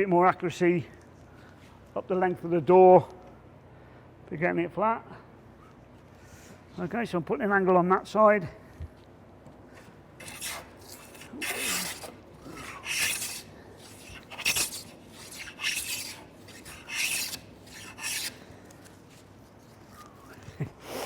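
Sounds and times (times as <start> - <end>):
plane rasping on wood: 10.2 - 18.5.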